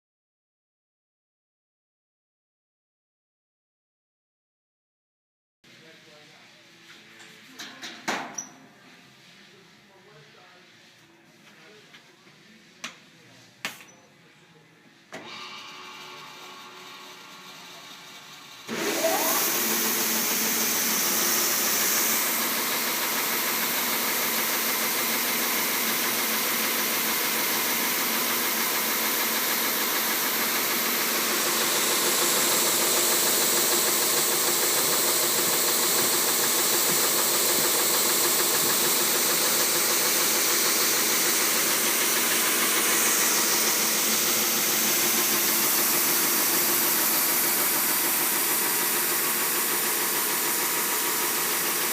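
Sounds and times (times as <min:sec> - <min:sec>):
belt sander running: 0:15.2 - 0:51.9.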